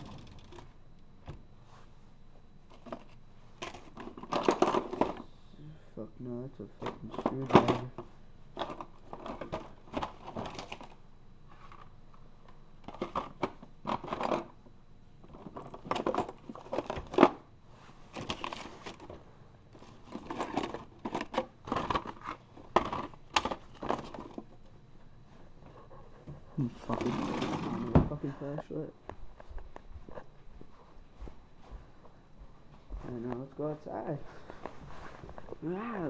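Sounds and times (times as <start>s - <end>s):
hands rummaging through objects: 19.8s - 24.5s.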